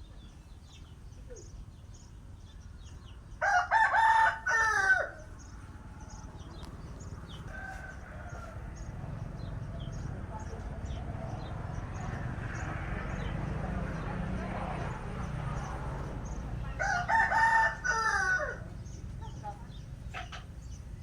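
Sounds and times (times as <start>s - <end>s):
rooster crowing: 3.4s - 5.3s, 7.3s - 9.0s, 16.7s - 18.7s.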